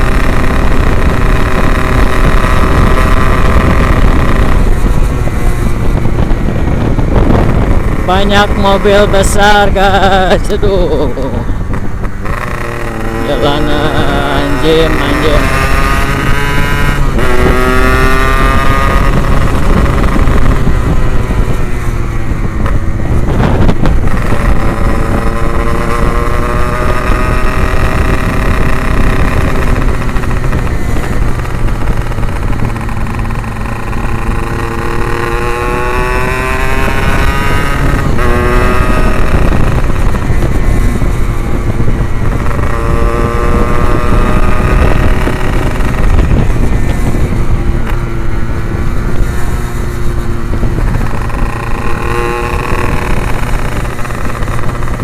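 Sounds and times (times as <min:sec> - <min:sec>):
two-stroke motorcycle revving: 0:00.0 - 0:55.0.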